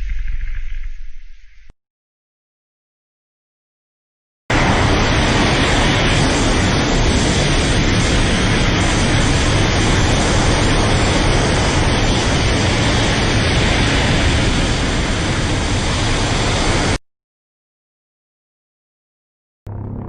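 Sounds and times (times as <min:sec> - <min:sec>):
loud rushing roar: 0:04.5 - 0:17.0.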